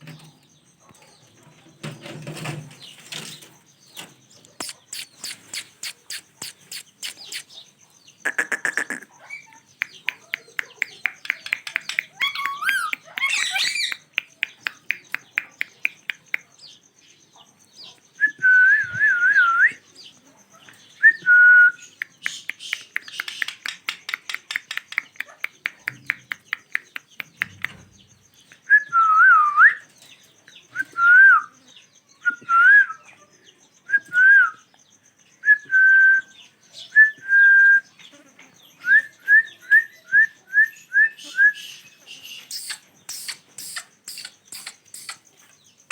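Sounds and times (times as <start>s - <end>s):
parrots clicking chatter: 2.9s - 16.5s, 21.9s - 27.9s, 42.2s - 45.9s
parrots whistling: 4.6s - 7.6s, 8.2s - 14.2s, 42.4s - 45.2s.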